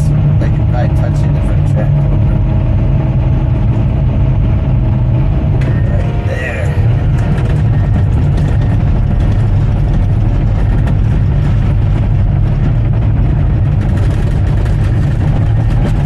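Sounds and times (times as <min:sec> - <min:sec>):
diesel engine rumbling: 0:00.0 - 0:16.0
faint clatter: 0:06.9 - 0:16.0.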